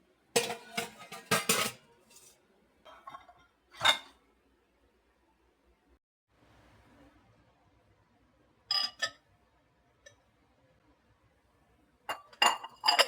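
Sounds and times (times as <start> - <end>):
kitchenware clinking: 0.4 - 4.2, 8.7 - 9.2, 12.1 - 13.0.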